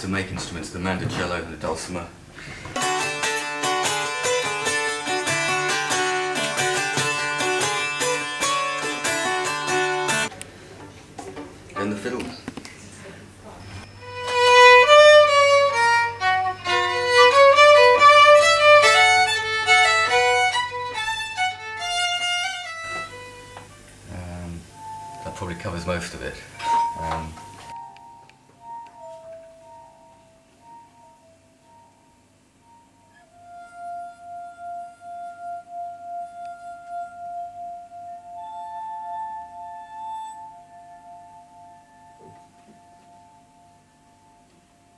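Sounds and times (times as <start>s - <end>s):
fiddle solo melody: 2.8s - 10.3s, 11.8s - 12.3s, 14.0s - 23.8s.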